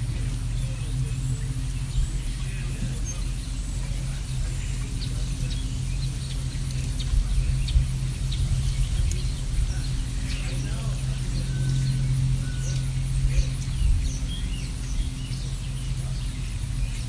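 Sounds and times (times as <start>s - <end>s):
birds chirping: 0.0s - 17.0s
steady low rumble: 0.0s - 17.0s.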